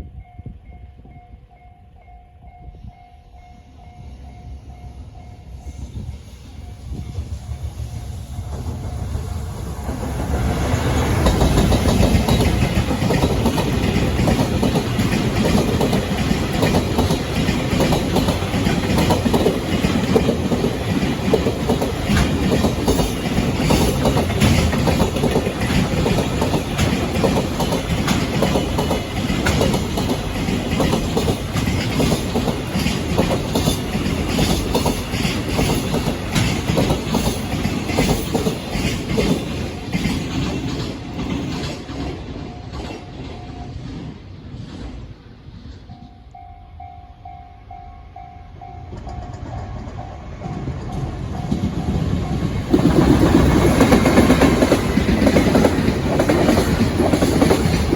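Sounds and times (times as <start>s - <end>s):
train wheels clacking over rail joints: 8.5s - 45.0s, 48.9s - 57.9s.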